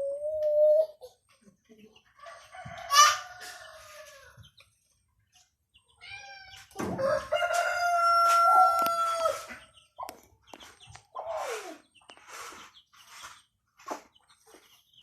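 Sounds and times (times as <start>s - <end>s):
rooster crowing: 2.2s - 4.4s, 7.0s - 9.5s.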